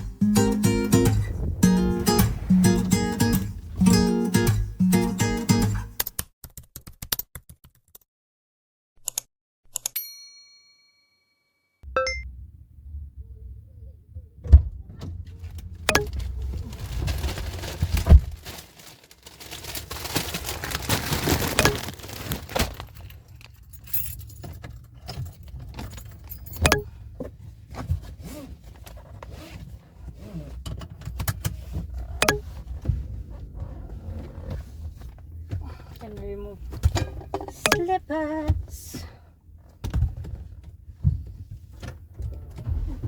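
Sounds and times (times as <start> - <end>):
low steady rumble: 0.0 - 4.8, 11.9 - 18.5, 31.8 - 42.8
rustling: 15.3 - 23.8
keys jangling: 22.8 - 26.8
sharp clicks and knocks: 32.2 - 32.6.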